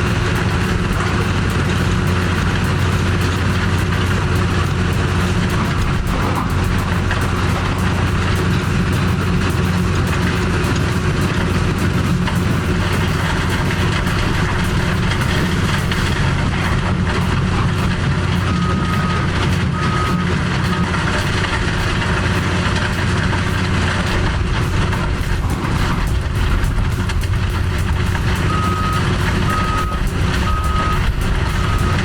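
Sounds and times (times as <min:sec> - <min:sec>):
diesel equipment running: 0:00.0 - 0:32.0
short high beep: 0:18.4 - 0:20.9, 0:28.5 - 0:32.0.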